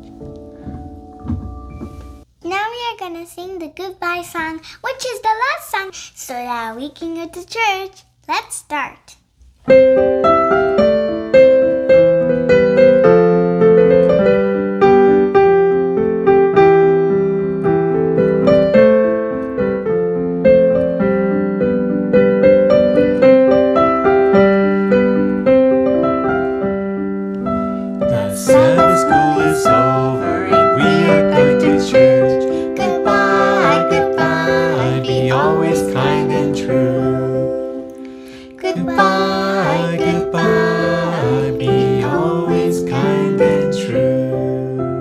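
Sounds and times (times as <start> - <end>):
electric piano playing: 0.0 - 2.3, 9.7 - 45.0
person singing: 27.8 - 45.0.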